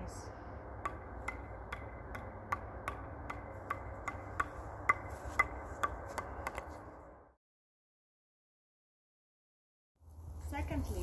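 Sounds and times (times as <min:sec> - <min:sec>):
steady low hum: 0:00.0 - 0:07.4.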